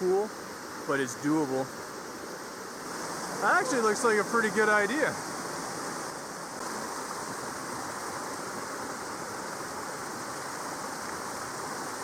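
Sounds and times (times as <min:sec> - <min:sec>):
waterfall pouring into pool: 0:02.9 - 0:12.0.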